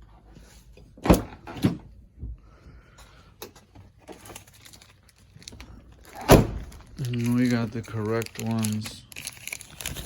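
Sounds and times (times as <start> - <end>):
small hard objects clicking: 6.9 - 10.0.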